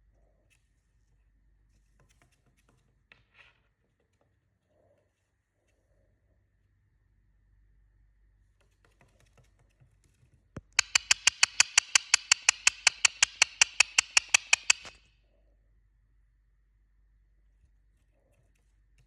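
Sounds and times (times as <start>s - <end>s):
parrot making sharp clicks: 10.8s - 15.0s.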